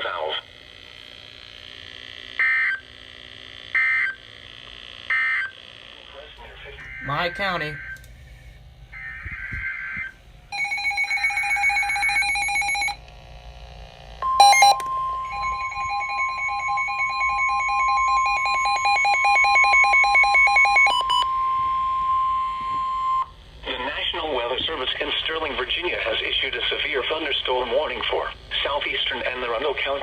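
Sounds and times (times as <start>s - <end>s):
long steady alert tone: 6.7s - 13.0s, 14.2s - 23.3s
rapid electronic beeping: 6.8s - 8.0s, 14.2s - 21.5s.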